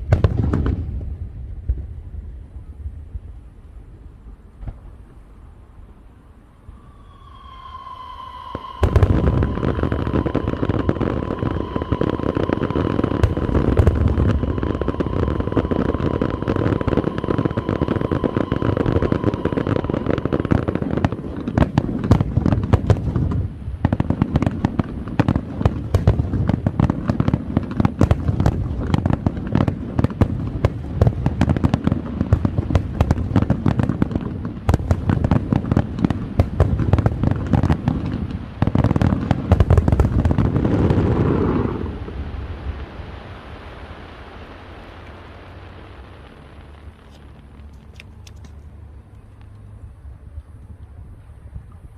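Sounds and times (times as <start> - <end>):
fireworks bangs and crackling: 0.0 - 3.4, 6.8 - 48.8
steady high whistle: 6.4 - 21.2.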